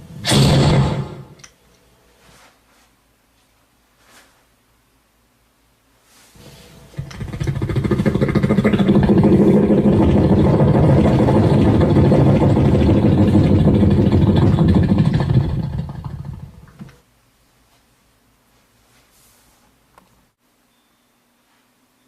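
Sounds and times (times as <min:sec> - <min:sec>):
person imitating an engine: 0:07.0 - 0:16.8.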